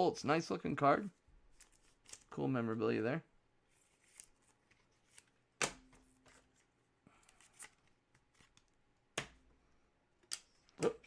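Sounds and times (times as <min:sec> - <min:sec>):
trading cards rustling: 0:01.1 - 0:02.7, 0:03.7 - 0:08.8.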